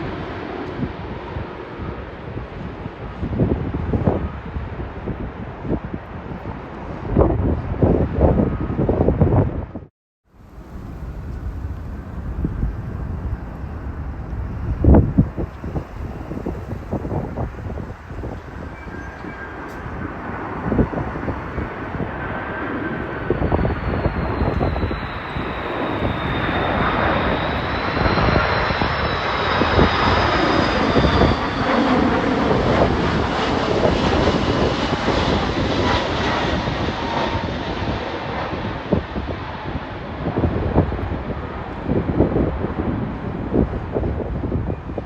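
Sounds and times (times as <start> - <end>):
wind gusting on microphone: 0.0 - 45.0
jet engines whining: 10.4 - 41.9.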